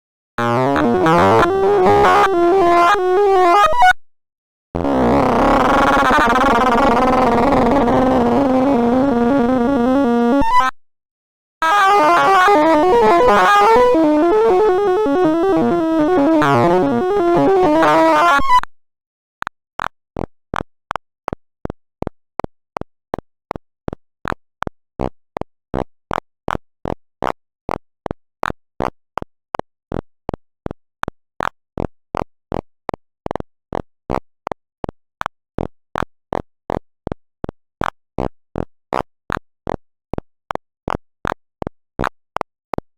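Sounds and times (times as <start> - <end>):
short electronic blips: 0.4 - 3.8, 4.8 - 10.7, 11.7 - 18.5.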